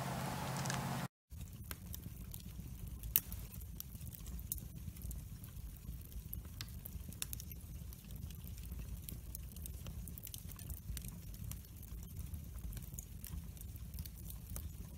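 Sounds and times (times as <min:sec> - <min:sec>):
low rumble of flames: 0:00.0 - 0:14.9
wood fire crackling and popping: 0:00.2 - 0:14.9.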